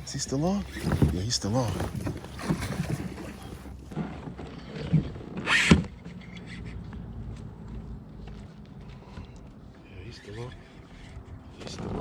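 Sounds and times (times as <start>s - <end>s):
water around kayak: 0.0s - 6.2s.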